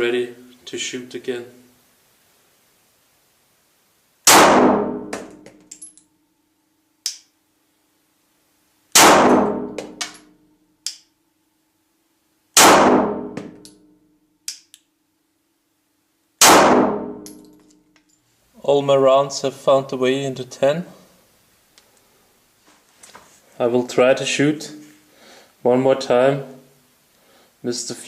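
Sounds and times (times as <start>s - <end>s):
pistol shots echoing: 4.3s - 5.4s, 9.0s - 10.2s, 12.6s - 13.6s, 16.4s - 17.4s.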